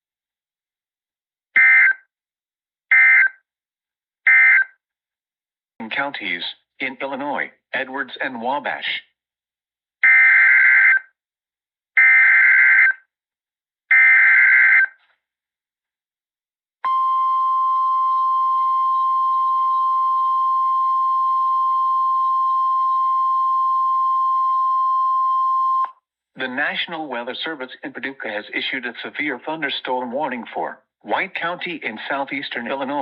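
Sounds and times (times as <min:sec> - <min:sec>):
steady loud warning tone: 0:16.8 - 0:25.9.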